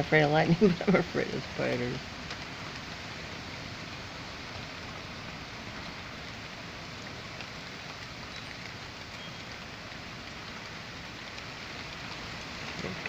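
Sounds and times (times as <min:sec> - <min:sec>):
steady rain on surfaces: 0:00.0 - 0:13.0.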